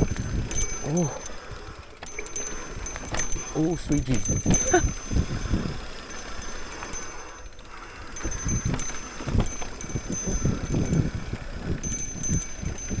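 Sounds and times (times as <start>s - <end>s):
bike tyres rumbling on trail: 0.0s - 13.0s
faint metallic ringing: 0.0s - 13.0s
wind on microphone: 2.6s - 7.0s, 8.0s - 13.0s.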